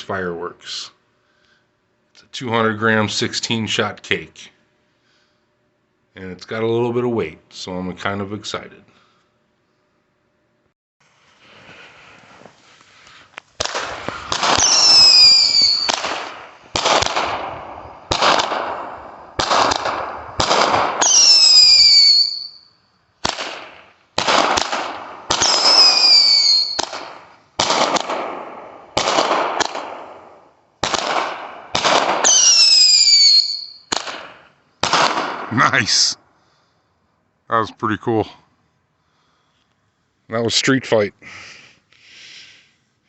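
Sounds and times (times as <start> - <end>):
firework shots: 13.6 - 22.5, 23.2 - 35.9
falling whistle: 14.6 - 16.0, 21.0 - 22.8, 25.4 - 26.8, 32.3 - 33.9.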